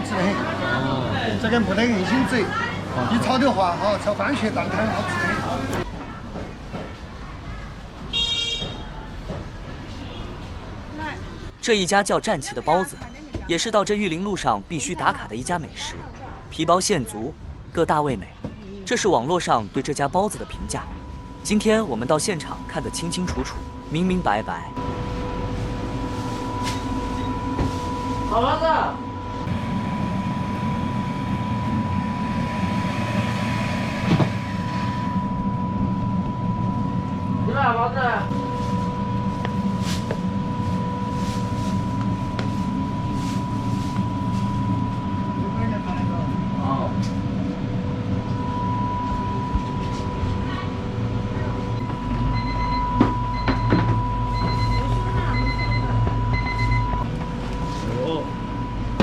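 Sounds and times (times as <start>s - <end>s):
thin hum tone: 20.0s - 59.0s
short beeps: 51.4s - 59.0s.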